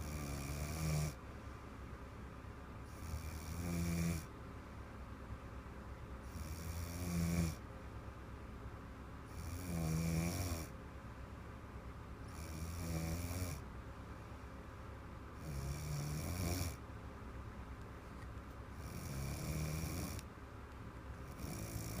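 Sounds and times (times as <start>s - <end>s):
woman snoring: 0.0s - 1.2s, 2.9s - 4.3s, 6.3s - 7.6s, 9.3s - 10.7s, 12.3s - 13.6s, 15.4s - 16.8s, 18.8s - 20.2s, 21.3s - 22.0s.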